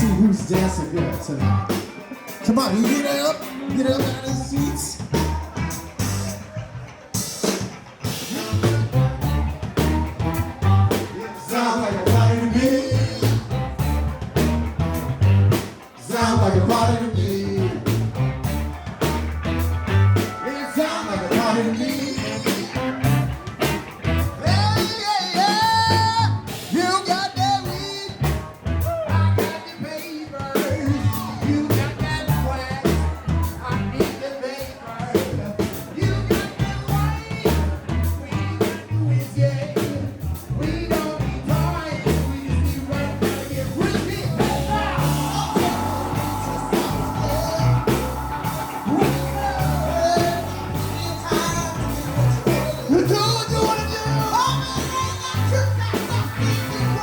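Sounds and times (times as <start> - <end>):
bass line: 0.0 - 1.9, 2.5 - 29.8, 30.4 - 34.3, 35.0 - 57.0
drum kit: 0.0 - 57.0
funk band playing: 0.0 - 57.0
held chord: 44.1 - 53.4.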